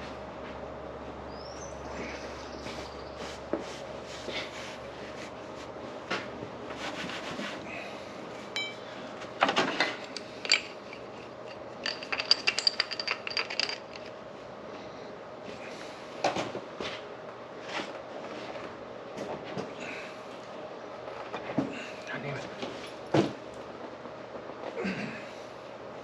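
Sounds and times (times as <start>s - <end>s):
metal tools clinking and scraping: 8.5s - 8.9s, 9.7s - 14.2s.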